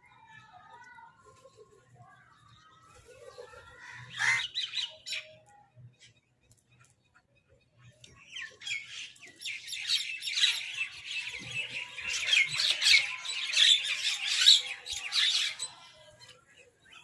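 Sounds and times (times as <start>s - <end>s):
birds squabbling: 2.9s - 5.2s.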